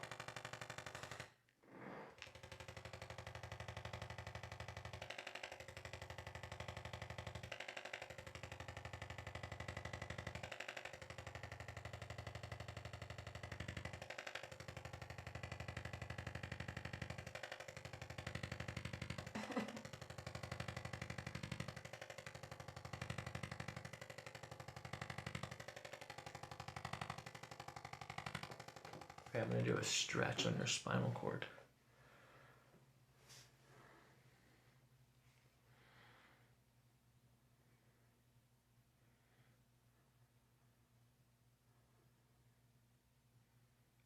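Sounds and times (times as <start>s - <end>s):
electric massager pulsing: 0.0s - 31.6s.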